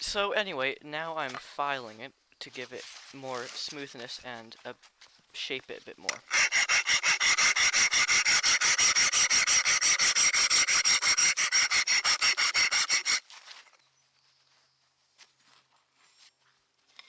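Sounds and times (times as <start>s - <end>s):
hand file rasping on steel: 6.1s - 13.2s.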